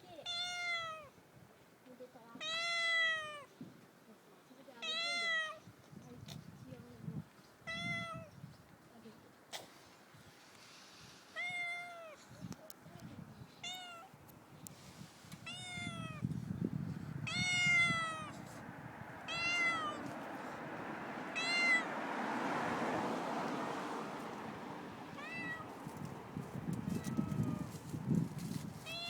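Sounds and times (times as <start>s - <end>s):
cat meowing: 0.2s - 1.1s, 2.4s - 3.5s, 4.8s - 5.6s, 7.7s - 8.3s, 11.4s - 12.2s, 13.6s - 14.1s, 15.4s - 16.2s, 17.3s - 18.4s, 19.3s - 20.0s, 21.3s - 21.9s, 25.1s - 25.8s, 26.9s - 27.8s.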